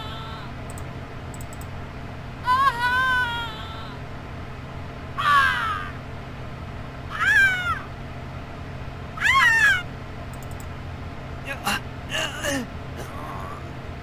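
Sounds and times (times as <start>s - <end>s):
high-pitched pain cries: 0.0s - 0.5s, 2.4s - 4.0s, 5.2s - 6.0s, 7.1s - 7.9s, 9.2s - 9.9s.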